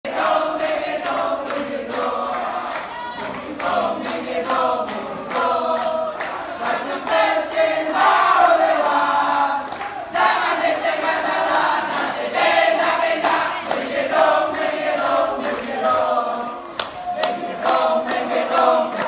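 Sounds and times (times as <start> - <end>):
group chanting in unison: 0.0 - 19.0.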